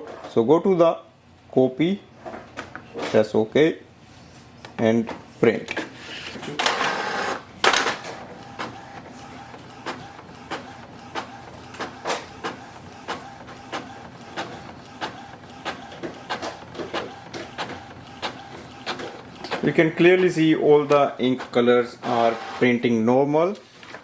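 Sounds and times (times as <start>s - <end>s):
inkjet printer whirring: 5.0s - 23.0s
printer paper feed noise: 5.0s - 23.0s
print head carriage ticking: 6.6s - 22.8s.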